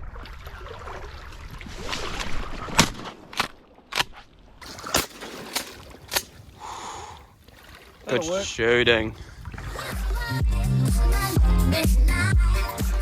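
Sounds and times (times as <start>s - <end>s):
shotgun blasts: 4.6s - 6.7s.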